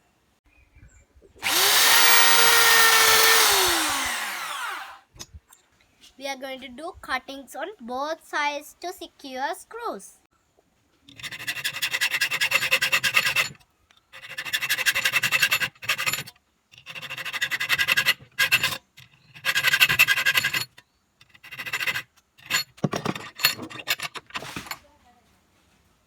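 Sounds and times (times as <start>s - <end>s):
hand saw rasping: 1.4s - 5.0s, 11.1s - 13.6s, 14.2s - 24.7s.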